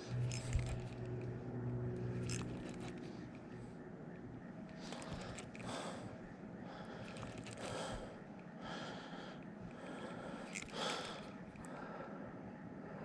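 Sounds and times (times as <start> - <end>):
man breathing hard: 4.9 - 13.0.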